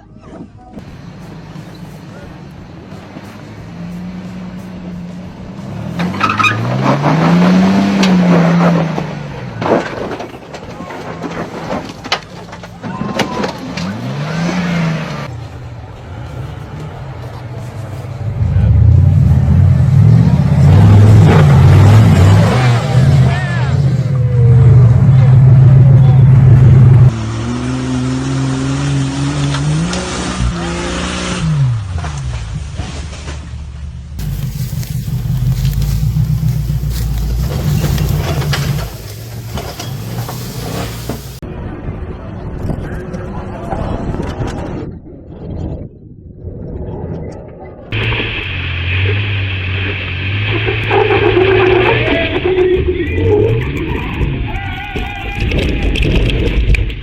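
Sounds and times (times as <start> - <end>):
engine revving: 0.8 - 10.2, 13.4 - 15.4, 18.3 - 32.6, 34.2 - 41.4, 48.0 - 54.5
steady rushing noise: 34.2 - 42.9.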